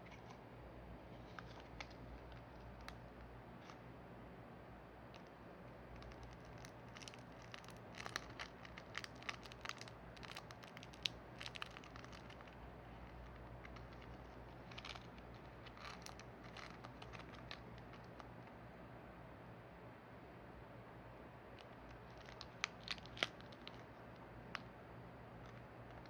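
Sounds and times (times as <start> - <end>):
plastic packaging crinkling: 5.9 - 18.3, 21.6 - 23.9.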